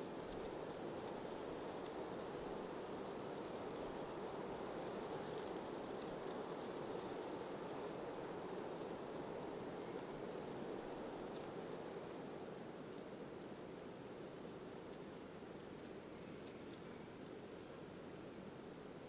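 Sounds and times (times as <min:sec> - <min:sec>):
wind through foliage: 0:00.0 - 0:19.0
songbird trilling: 0:15.2 - 0:17.1.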